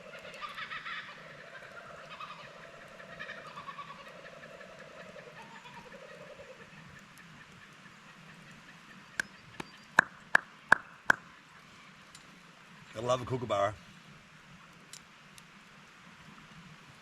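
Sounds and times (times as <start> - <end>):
kookaburra chuckling call: 0.0 - 6.8.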